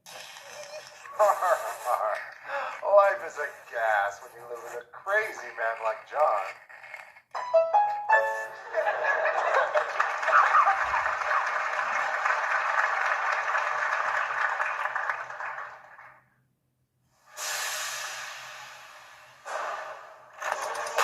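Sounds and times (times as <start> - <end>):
steady hissing noise: 17.0 - 20.3.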